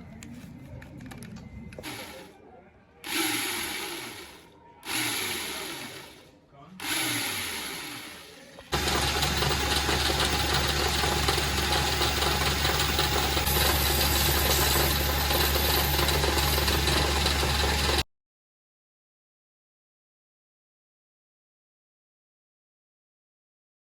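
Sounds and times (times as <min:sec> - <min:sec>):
electric power tool motor running: 0:01.8 - 0:02.3, 0:03.0 - 0:18.0.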